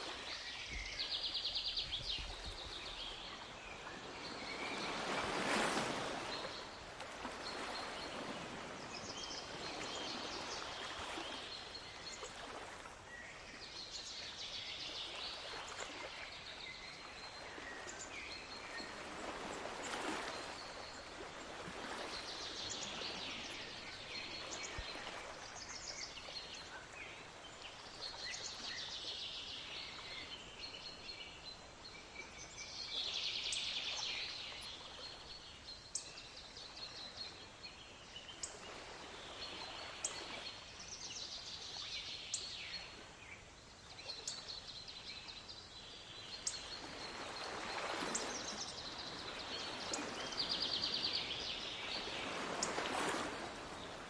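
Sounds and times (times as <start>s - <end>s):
waves washing: 2.0s - 13.1s, 46.7s - 54.0s.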